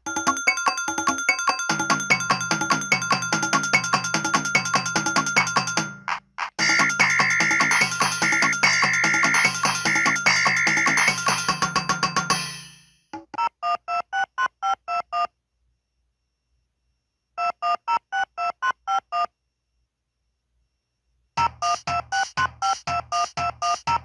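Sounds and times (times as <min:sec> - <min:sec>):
multi-note ringtone melody: 0:00.0 - 0:06.0, 0:06.6 - 0:12.9
short electronic ringtone beeps: 0:00.0 - 0:06.0, 0:06.6 - 0:15.3.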